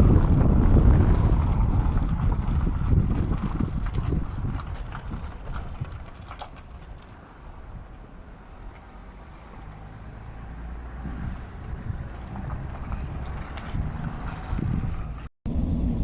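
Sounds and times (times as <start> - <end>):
vehicle engine rumbling: 0.0 - 16.0.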